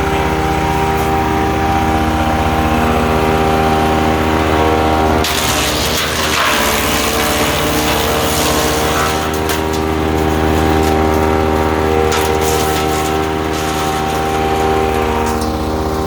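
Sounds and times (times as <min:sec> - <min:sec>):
branches grinding in chipper: 0:00.0 - 0:16.0
wood chipper engine running: 0:00.0 - 0:16.0.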